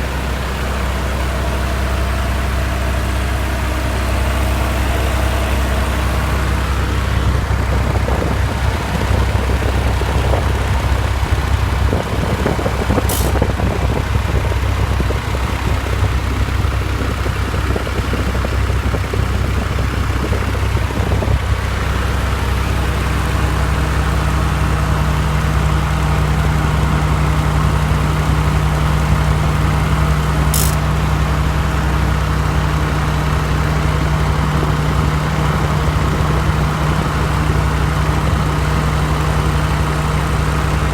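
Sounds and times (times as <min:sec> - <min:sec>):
car engine idling: 0:00.0 - 0:40.9
ac compressor rapid ticking: 0:25.4 - 0:40.9.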